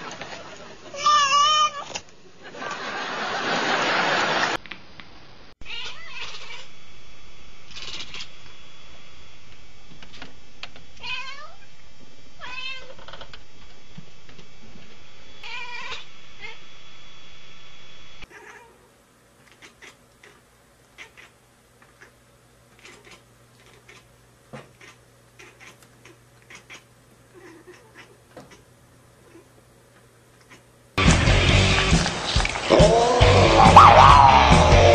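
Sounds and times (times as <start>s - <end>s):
cat meowing: 1.0s - 1.9s, 5.6s - 6.7s, 11.0s - 11.6s, 12.4s - 13.0s, 15.4s - 16.6s, 18.3s - 18.8s.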